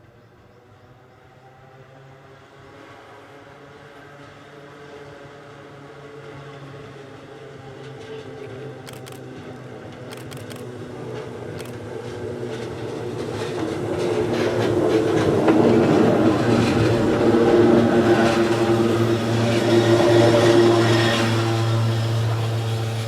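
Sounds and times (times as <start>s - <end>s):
sharp clicks: 8.9s - 9.2s, 10.1s - 10.7s, 11.5s - 11.8s
electric train motor hum: 11.6s - 23.0s.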